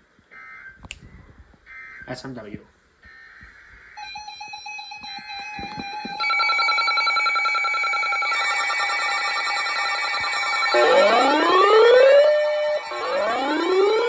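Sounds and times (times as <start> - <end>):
harsh steady attention tone: 4.0 - 14.0.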